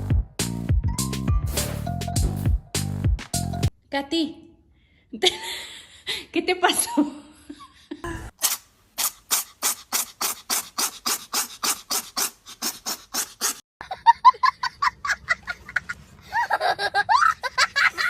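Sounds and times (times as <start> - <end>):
rhythmic rasping panting: 9.0 - 13.7.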